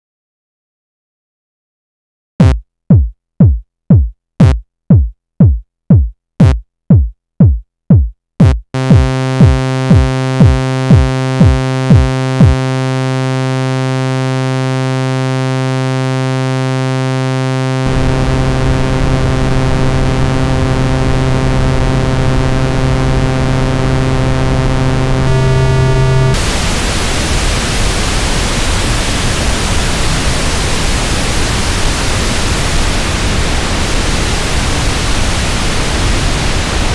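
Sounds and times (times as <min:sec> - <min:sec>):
synthesizer thumps dropping in pitch: 0:02.4 - 0:12.6, 0:23.4 - 0:26.5
rushing synthesized noise: 0:08.8 - 0:12.7, 0:17.8 - 0:36.9
held buzzy synthesizer tone: 0:08.8 - 0:28.0.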